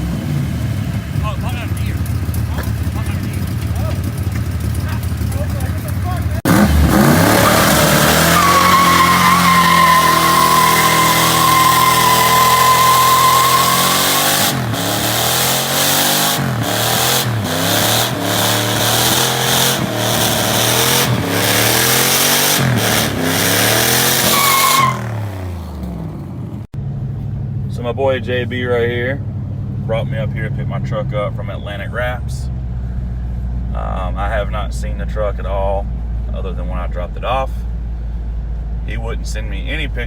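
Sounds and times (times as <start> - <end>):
car engine revving: 0.0 - 36.9
tyre squeal: 7.1 - 14.7, 23.0 - 25.3.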